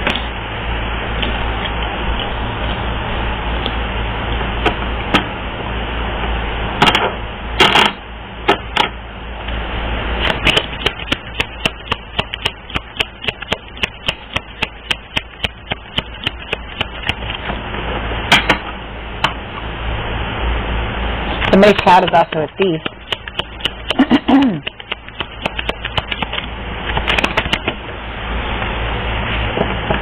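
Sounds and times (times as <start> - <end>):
cards being shuffled: 10.2 - 17.4, 21.4 - 27.7.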